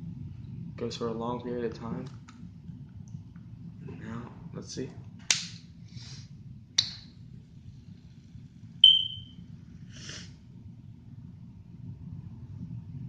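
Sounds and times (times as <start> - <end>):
high metallic ping: 8.8 - 9.3.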